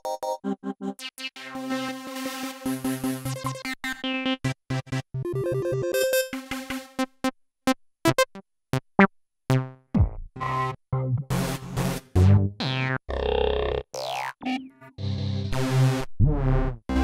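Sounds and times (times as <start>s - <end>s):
synthesizer notes: 11.0s - 17.0s.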